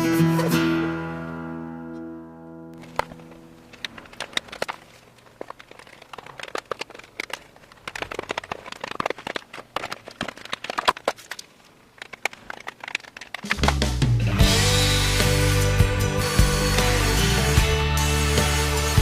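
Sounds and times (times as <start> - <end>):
material crinkling by hand: 2.8 - 14.0
sharp clicks: 2.8 - 14.0.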